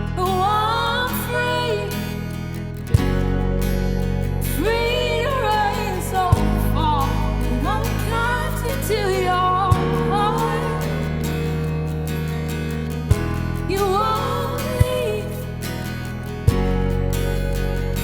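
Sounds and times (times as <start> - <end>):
sustained instrumental chords: 2.6 - 18.0
person singing: 4.4 - 11.7, 13.7 - 16.0.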